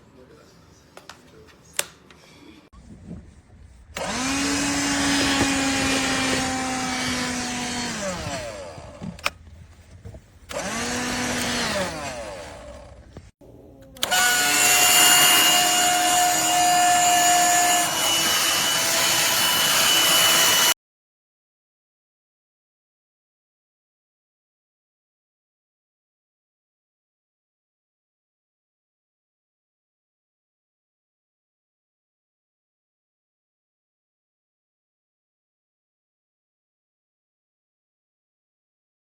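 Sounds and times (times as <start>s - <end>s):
handheld vacuum motor whine: 3.9s - 9.4s, 10.4s - 13.3s, 14.0s - 20.8s.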